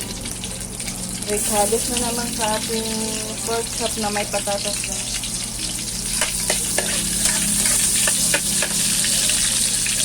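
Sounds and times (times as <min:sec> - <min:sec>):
food sizzling in oil: 0:00.0 - 0:10.0
spatula scraping a pan: 0:06.2 - 0:08.8.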